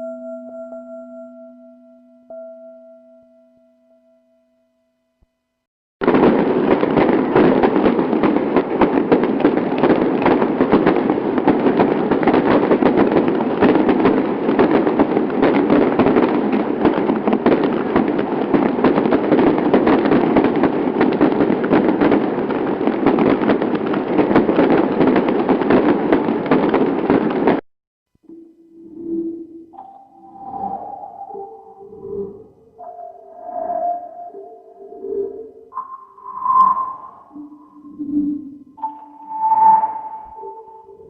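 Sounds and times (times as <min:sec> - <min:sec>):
firecrackers popping: 0:06.0 - 0:27.6.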